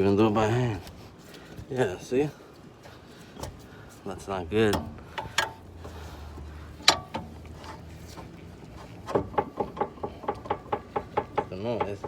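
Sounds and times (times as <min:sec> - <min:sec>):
metal suspension part clunking: 0:04.6 - 0:05.6, 0:06.7 - 0:08.3.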